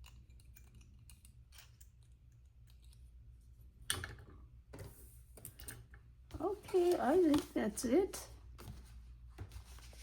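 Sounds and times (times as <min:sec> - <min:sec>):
paper rustling: 0:06.7 - 0:07.8, 0:08.6 - 0:10.0.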